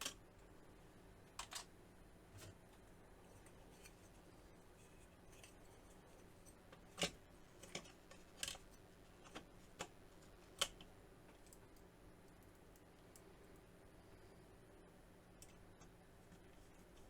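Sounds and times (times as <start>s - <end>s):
small parts clicking and tapping: 0.0s - 0.2s, 1.3s - 1.7s, 6.4s - 13.7s.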